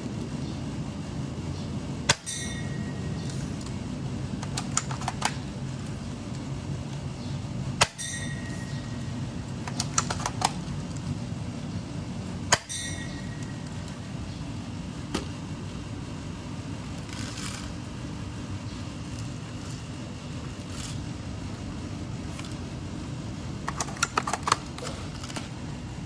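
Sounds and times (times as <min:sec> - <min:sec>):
airsoft gun shots: 0:12.5 - 0:13.1.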